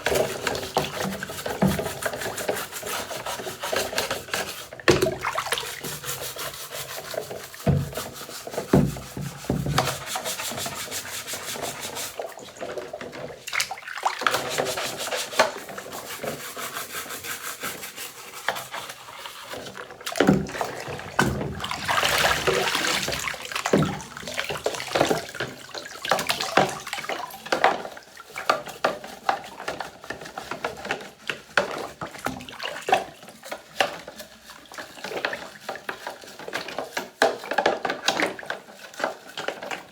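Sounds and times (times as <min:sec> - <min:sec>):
rapid scrubbing: 0:14.3 - 0:27.3.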